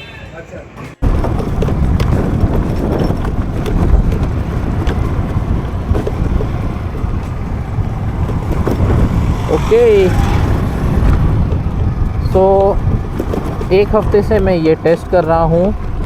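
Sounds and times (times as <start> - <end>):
road and engine noise: 0.0 - 16.0
wind rumble on microphone: 1.0 - 16.0.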